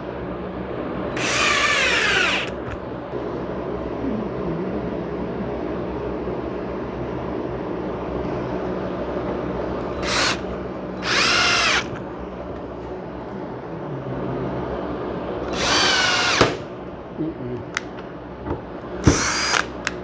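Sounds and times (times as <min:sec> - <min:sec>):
steady low background noise: 0:00.0 - 0:20.0
cordless drill driving screws: 0:01.2 - 0:02.7, 0:09.9 - 0:10.4, 0:11.0 - 0:12.0, 0:15.5 - 0:16.6, 0:19.0 - 0:19.8.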